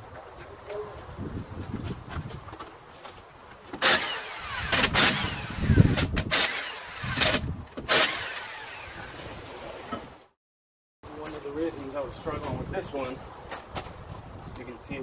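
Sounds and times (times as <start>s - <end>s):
impact wrench bursts: 3.8s - 9.1s.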